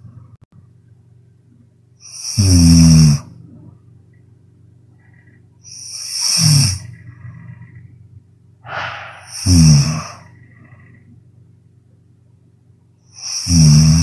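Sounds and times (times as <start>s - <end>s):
woman snoring loudly: 2.1s - 3.3s, 5.7s - 6.9s, 9.2s - 10.2s, 13.2s - 14.0s
breathy exhale: 8.6s - 11.0s.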